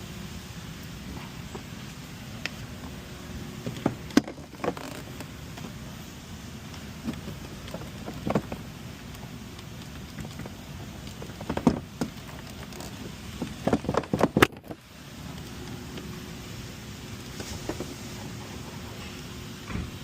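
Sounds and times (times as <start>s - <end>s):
steady low hiss: 0.0s - 20.0s
plastic clicks and knocks: 9.6s - 14.8s.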